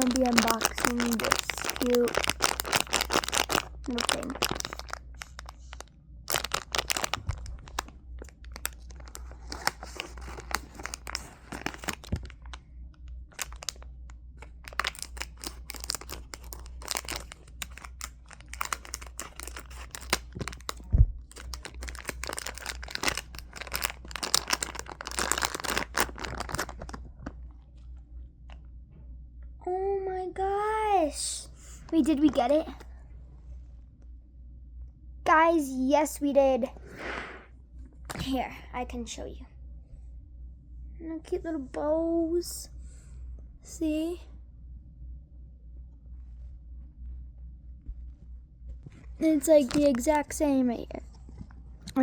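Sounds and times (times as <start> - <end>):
plastic packaging crinkling: 0.0 - 12.6, 13.2 - 27.4, 31.8 - 32.8, 49.1 - 50.5.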